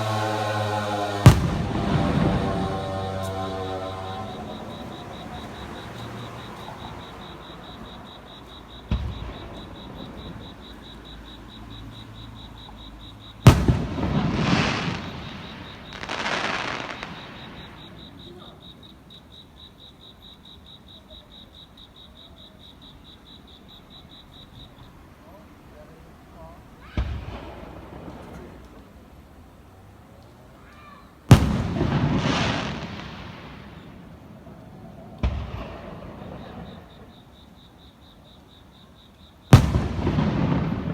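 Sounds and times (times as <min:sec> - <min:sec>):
firework crackling: 0:00.0 - 0:08.0, 0:13.5 - 0:18.3, 0:31.3 - 0:37.0, 0:39.5 - 0:40.9
firework bangs: 0:00.0 - 0:10.8, 0:13.4 - 0:18.6, 0:26.8 - 0:29.2, 0:31.3 - 0:37.2, 0:39.5 - 0:40.9.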